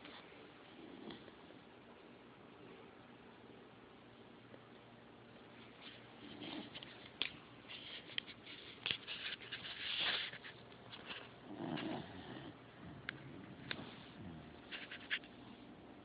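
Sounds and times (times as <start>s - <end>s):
dog snoring: 0.7s - 1.4s, 11.4s - 14.6s.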